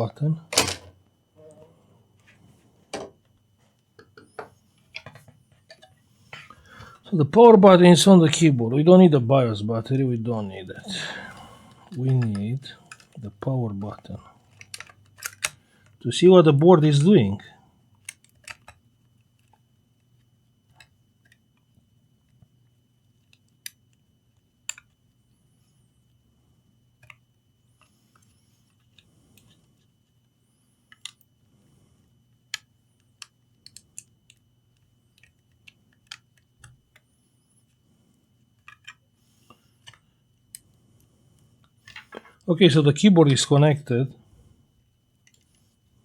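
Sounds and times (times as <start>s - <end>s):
faint low hum: 0.0s - 46.0s
small clicks of laptop parts: 14.5s - 16.0s, 18.0s - 22.5s, 23.1s - 25.2s, 27.0s - 30.3s, 30.9s - 31.3s, 32.3s - 37.8s, 38.5s - 40.7s.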